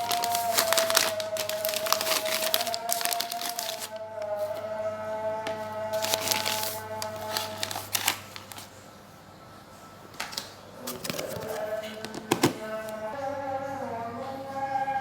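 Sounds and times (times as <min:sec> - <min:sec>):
plastic containers clicking and rustling: 0:00.0 - 0:04.6, 0:05.5 - 0:08.7, 0:10.1 - 0:13.0.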